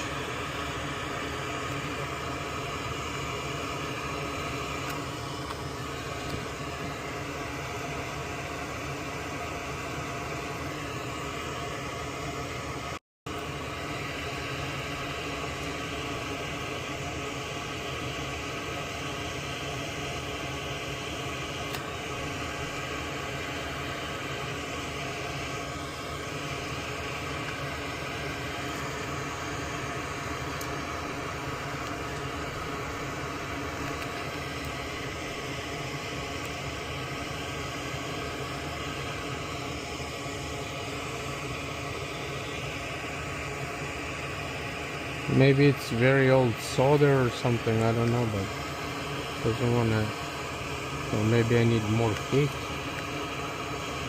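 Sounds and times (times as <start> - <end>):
fan whoosh: 20.9 - 54.0.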